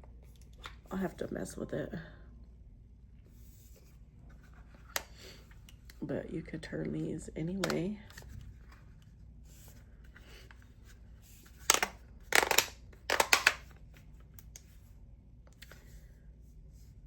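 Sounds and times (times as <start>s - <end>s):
plastic clicking and rattling: 11.6s - 13.8s.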